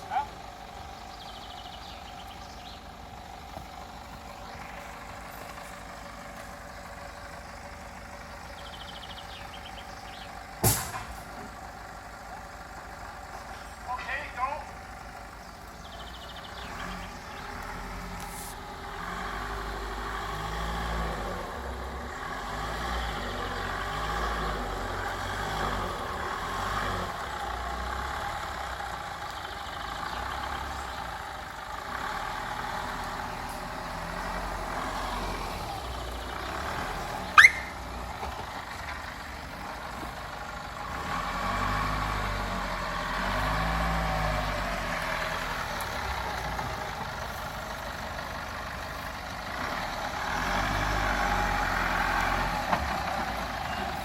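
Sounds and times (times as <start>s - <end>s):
off-road engine revving: 0.0s - 54.0s
sharp rising squeak: 37.3s - 37.8s.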